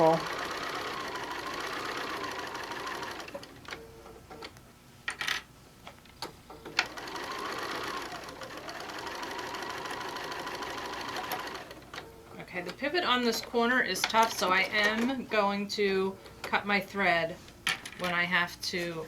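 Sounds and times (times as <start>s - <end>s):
sewing machine stitching: 0.0s - 3.8s, 6.7s - 12.0s.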